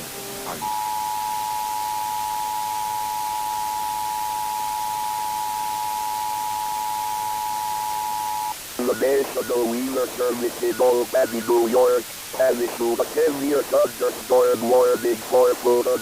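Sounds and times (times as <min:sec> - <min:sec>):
two steady high alert tones: 0:00.6 - 0:12.6, 0:13.2 - 0:16.0
faint hiss: 0:00.8 - 0:16.0.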